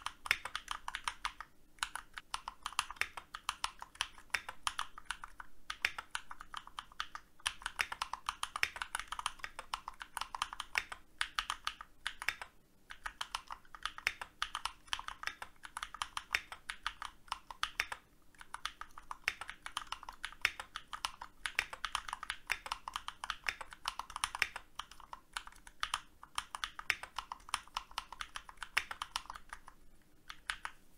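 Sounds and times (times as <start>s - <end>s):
computer keyboard typing: 0.0s - 30.8s.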